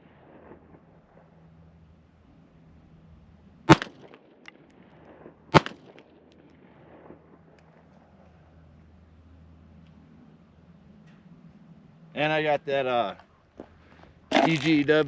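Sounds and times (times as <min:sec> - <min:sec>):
pistol shots: 0:03.7 - 0:07.8.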